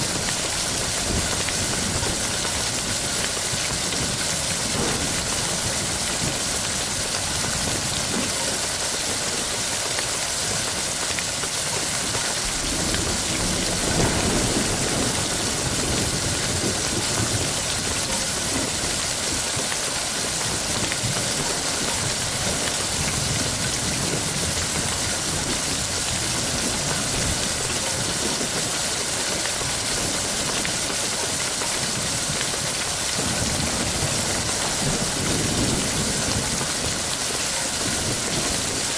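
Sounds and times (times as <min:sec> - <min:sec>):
heavy rain: 0:00.0 - 0:38.9
low rumble of thunder: 0:00.1 - 0:08.6, 0:12.4 - 0:28.8, 0:33.1 - 0:38.9.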